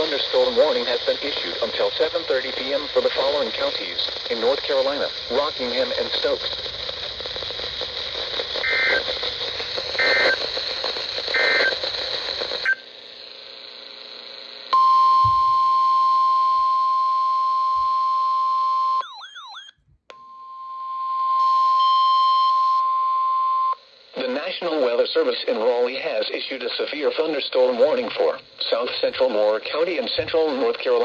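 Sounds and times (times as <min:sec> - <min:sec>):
radio hiss: 0:00.0 - 0:14.7, 0:23.7 - 0:31.0
data tone bursts: 0:08.6 - 0:09.2, 0:10.0 - 0:10.6, 0:11.3 - 0:11.8.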